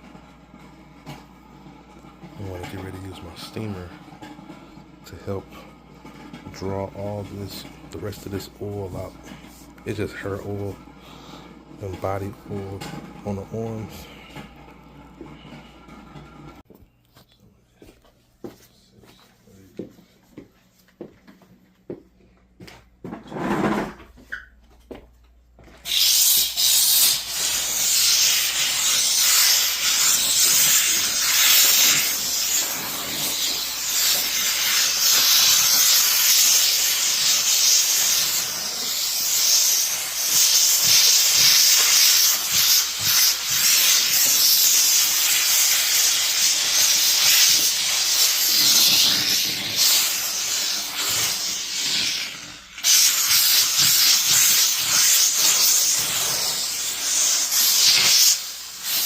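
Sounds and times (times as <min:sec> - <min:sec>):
steamer hissing: 0:05.0 - 0:15.9, 0:25.8 - 0:59.0.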